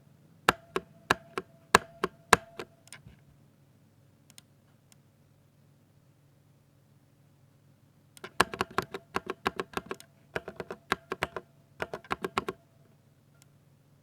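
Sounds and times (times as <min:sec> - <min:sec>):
mechanical keyboard typing: 0:00.5 - 0:03.0, 0:08.2 - 0:12.6.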